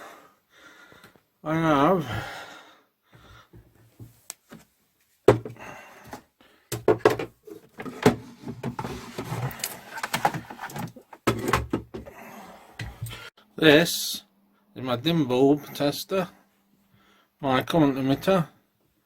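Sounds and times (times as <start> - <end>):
equipment knocking on workbench: 5.3 - 5.6, 6.7 - 8.8.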